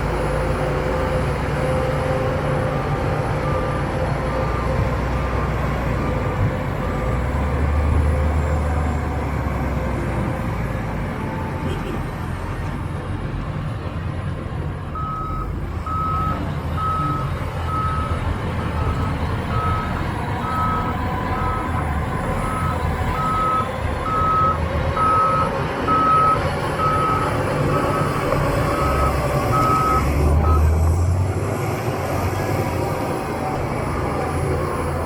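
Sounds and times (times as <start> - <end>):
diesel machinery rumbling: 0.0 - 35.0
backup alarm beeping: 15.0 - 21.7, 22.4 - 28.1, 28.8 - 30.7.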